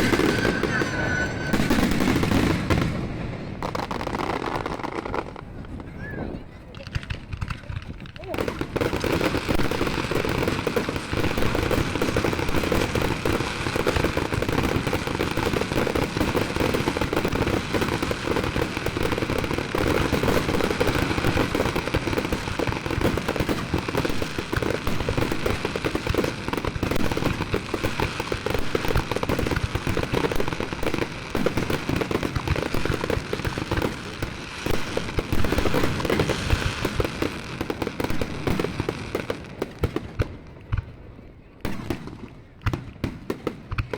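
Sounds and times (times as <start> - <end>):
fireworks bursting and crackling: 0.0 - 41.0, 41.6 - 43.9.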